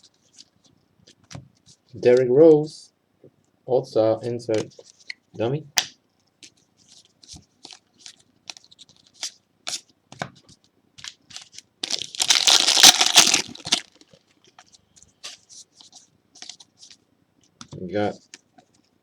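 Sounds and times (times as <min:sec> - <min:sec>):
cards being handled and flicked: 0:04.5 - 0:05.2
foil pack tearing and crinkling: 0:11.8 - 0:14.0.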